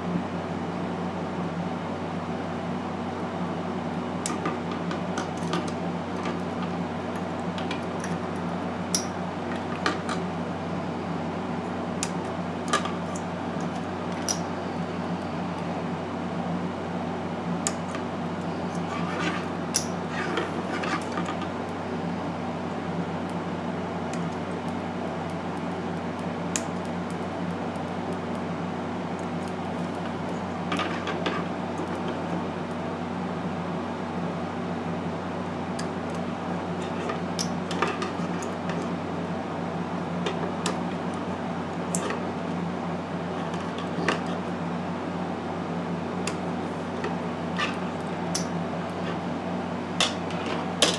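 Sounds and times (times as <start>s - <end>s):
low fan hum: 0.0s - 50.9s.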